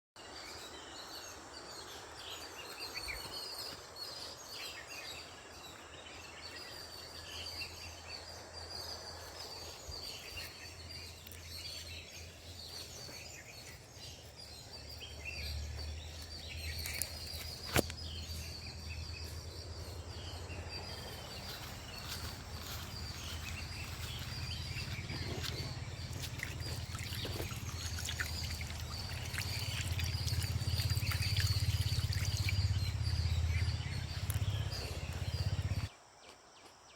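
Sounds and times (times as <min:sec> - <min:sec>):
birds chirping: 0:00.2 - 0:35.9
low steady rumble: 0:18.2 - 0:35.9.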